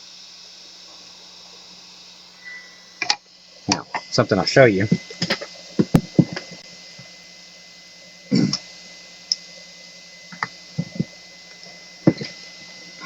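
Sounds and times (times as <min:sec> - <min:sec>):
faint hum: 0:00.0 - 0:13.0
thin high whine: 0:00.0 - 0:13.0
objects knocking on workbench: 0:05.2 - 0:06.4, 0:12.1 - 0:12.3.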